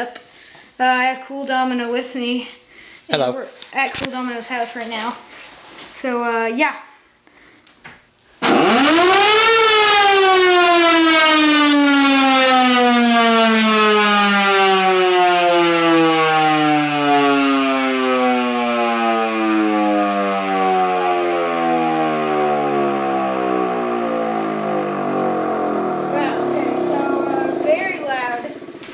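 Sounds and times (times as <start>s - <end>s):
siren wailing: 8.4s - 28.9s.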